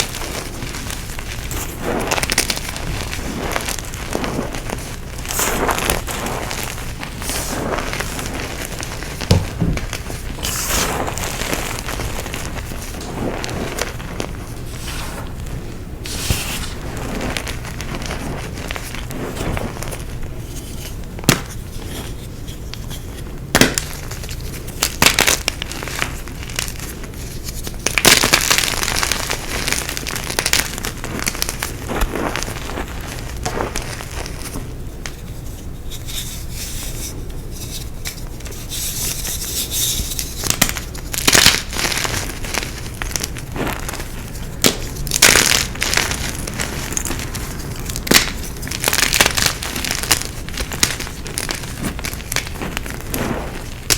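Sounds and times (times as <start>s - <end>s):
chalk crunching and crackling: 0.0s - 53.9s.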